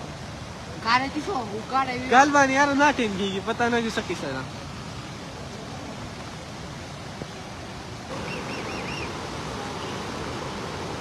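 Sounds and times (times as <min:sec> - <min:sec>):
flood river rushing: 0:00.0 - 0:11.0
high bird chirps: 0:08.2 - 0:09.1.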